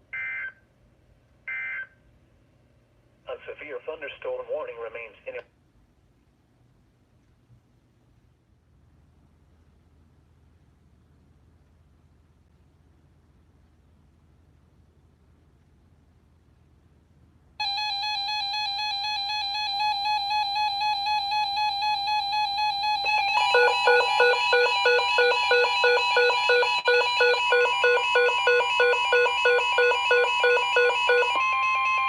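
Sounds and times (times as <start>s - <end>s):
fast two-pitch beeping alarm: 17.6s - 32.0s
steady electronic alert tone: 17.6s - 32.0s.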